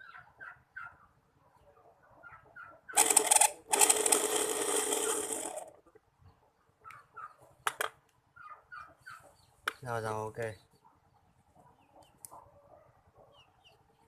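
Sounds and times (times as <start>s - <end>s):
small motor whirring: 3.0s - 5.7s.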